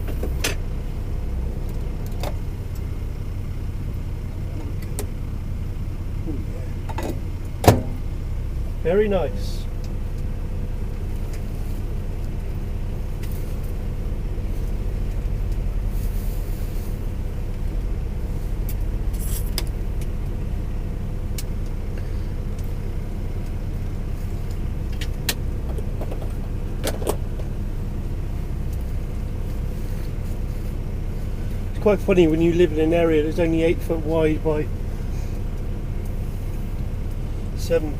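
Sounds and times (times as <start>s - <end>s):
truck cab mechanical hum: 0.0s - 37.9s.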